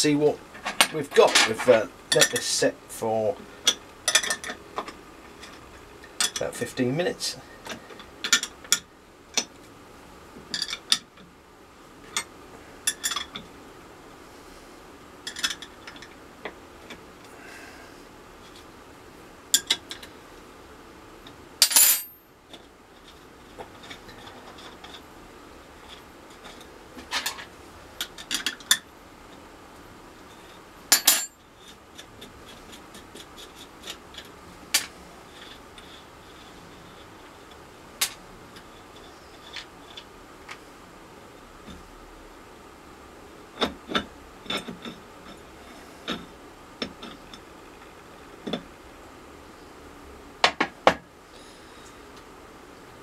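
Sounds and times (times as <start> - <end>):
metal parts clinking: 21.6 - 22.2, 30.9 - 31.4.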